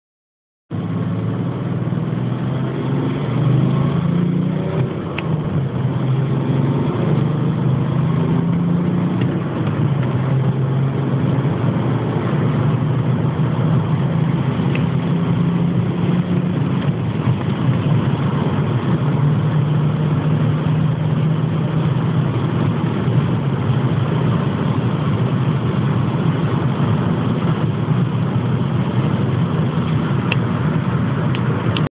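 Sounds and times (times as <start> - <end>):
diesel engine running: 0.7 - 31.9.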